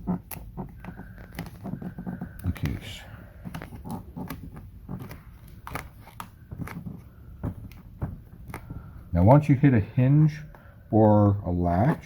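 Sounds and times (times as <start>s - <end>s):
squeegee scraping vinyl film: 0.0s - 9.5s.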